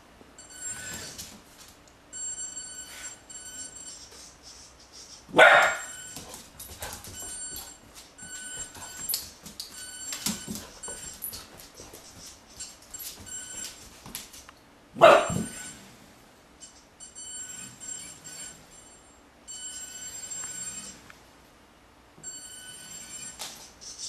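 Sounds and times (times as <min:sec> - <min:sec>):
puppy barking: 0:05.3 - 0:06.0, 0:15.0 - 0:15.5
toy car electric motor whine: 0:19.7 - 0:21.1, 0:22.6 - 0:23.7.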